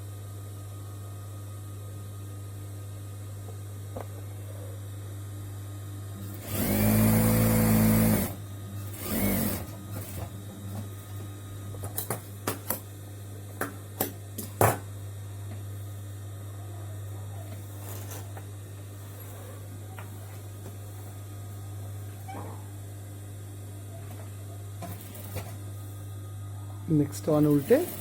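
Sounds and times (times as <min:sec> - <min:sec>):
low mains hum: 0:00.0 - 0:28.0
sewing machine stitching: 0:06.4 - 0:08.4, 0:27.4 - 0:28.0.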